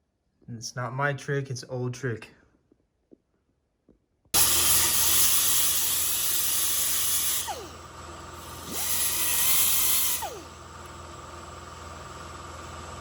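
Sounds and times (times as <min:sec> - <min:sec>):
arc welder crackling hiss: 0:04.4 - 0:07.7.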